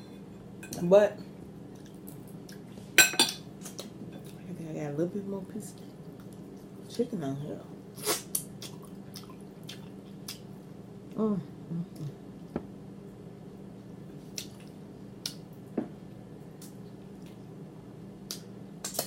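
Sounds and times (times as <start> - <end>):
faint steady hum: 0.0 - 19.0
wet mouth smacking while chewing: 8.0 - 10.4
person humming: 11.2 - 12.2.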